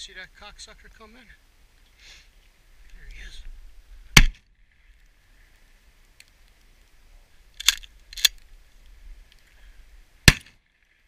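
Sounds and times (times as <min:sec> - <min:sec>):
shotgun shot: 0:10.3 - 0:10.6.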